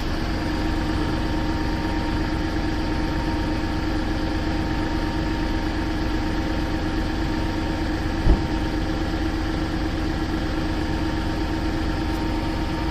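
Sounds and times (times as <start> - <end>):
diesel engine idling with knock: 0.0 - 12.9
loud thump: 8.2 - 8.6.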